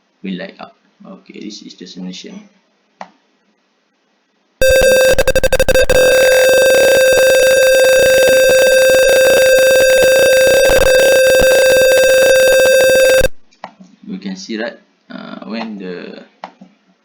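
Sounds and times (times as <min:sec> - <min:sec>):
buzzer tone: 0:04.6 - 0:13.4
clicks: 0:04.6 - 0:13.4.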